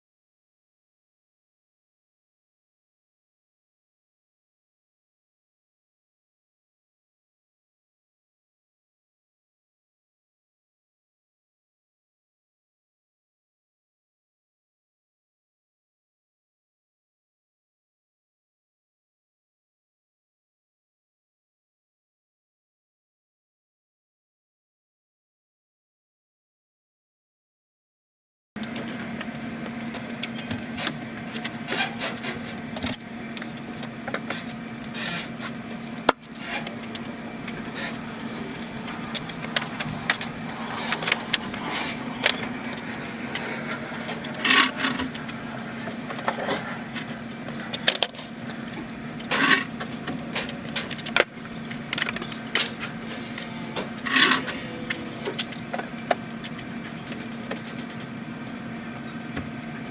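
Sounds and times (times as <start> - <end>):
steady low hum: 28.6 - 59.9.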